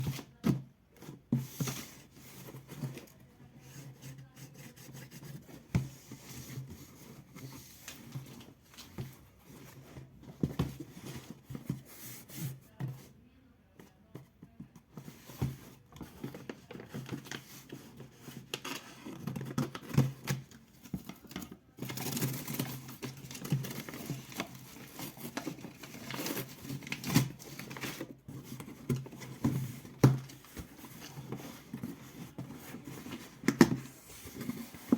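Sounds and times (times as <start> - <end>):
paper or plastic crinkling: 16.2 - 34.9.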